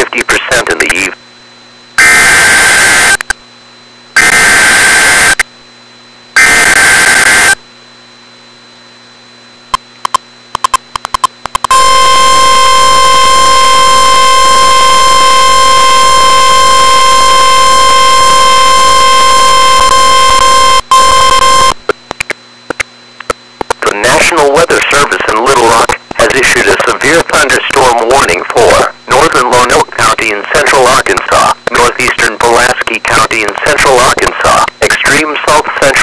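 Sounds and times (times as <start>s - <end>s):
steady warning alarm tone: 2.0s - 3.2s, 4.2s - 5.4s, 6.4s - 7.6s, 11.7s - 21.8s
screechy digital data bursts: 4.2s - 5.4s, 6.4s - 7.6s, 11.7s - 21.8s.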